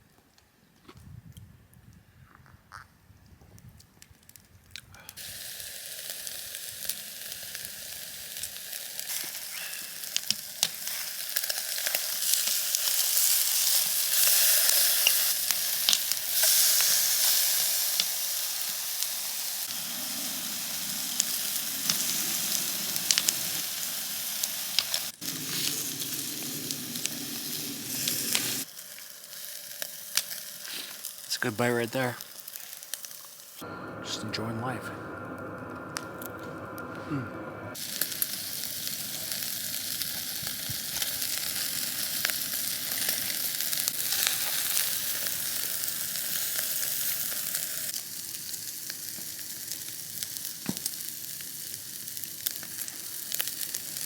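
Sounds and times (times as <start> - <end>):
meat sizzling over charcoal: 4.2 - 33.7, 37.8 - 54.0
low hum: 33.6 - 37.8.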